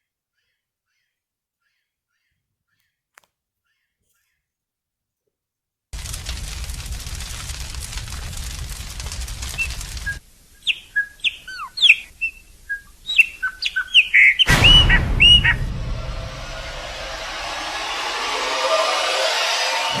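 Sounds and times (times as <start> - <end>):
steady rushing noise: 6.0 - 10.5, 14.5 - 20.0
bird whistling chirps: 9.6 - 15.6.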